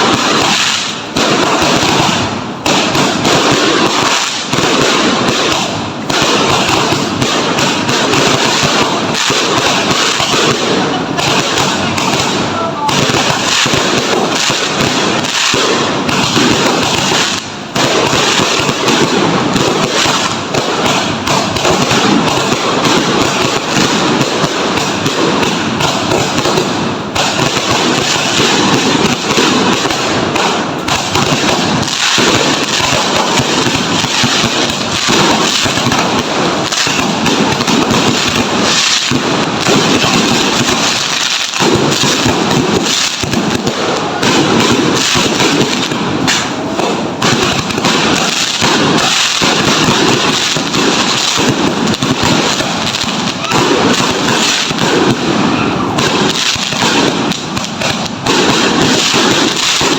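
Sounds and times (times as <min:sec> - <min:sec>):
fireworks and firecrackers banging: 0:00.0 - 0:59.9.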